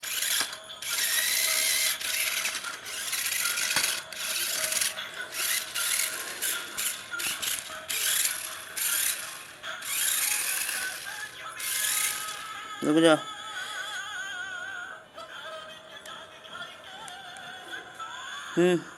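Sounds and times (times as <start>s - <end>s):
rc truck motor whirring: 0.0s - 12.7s.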